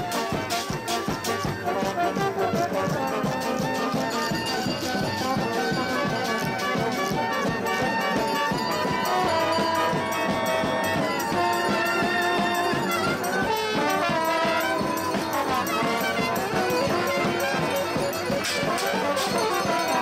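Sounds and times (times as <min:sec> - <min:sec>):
brass band playing: 0:00.0 - 0:20.0
busy percussion beat: 0:00.0 - 0:20.0
horns holding long notes: 0:00.0 - 0:20.0.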